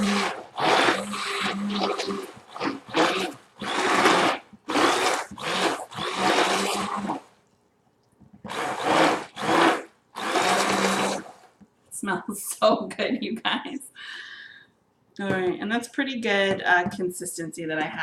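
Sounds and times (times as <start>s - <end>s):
immersion blender pulsing: 0.0s - 7.3s, 8.4s - 11.5s.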